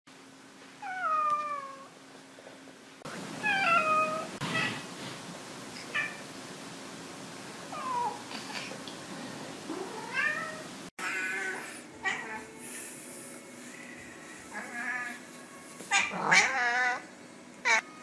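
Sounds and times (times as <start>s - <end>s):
cats meowing: 0.8s - 1.9s, 3.4s - 4.8s, 9.7s - 12.5s, 15.9s - 17.1s.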